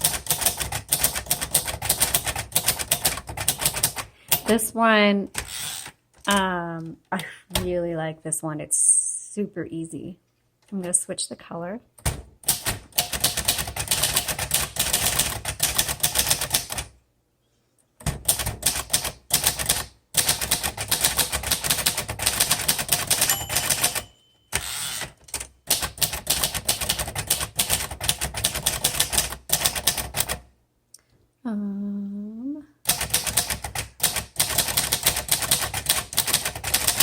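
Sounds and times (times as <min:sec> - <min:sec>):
manual typewriter keystrokes: 0:00.0 - 0:04.6, 0:12.0 - 0:17.0, 0:18.0 - 0:30.5, 0:32.9 - 0:37.0
typewriter bell ring: 0:23.0 - 0:25.5.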